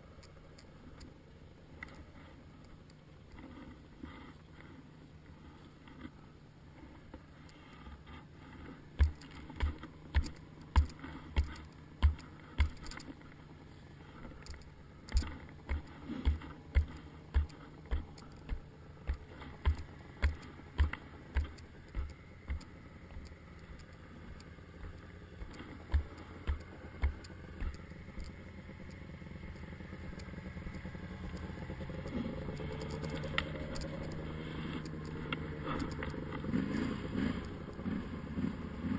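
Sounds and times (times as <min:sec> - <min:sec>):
atv engine humming: 0:00.0 - 0:38.9
dull low thumps: 0:15.1 - 0:30.2.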